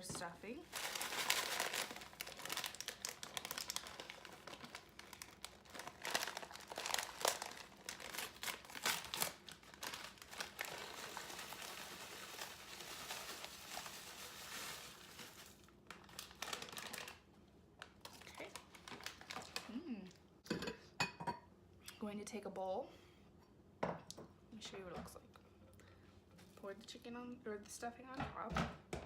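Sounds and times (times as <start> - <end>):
plastic bag crinkling: 0.5 - 19.8.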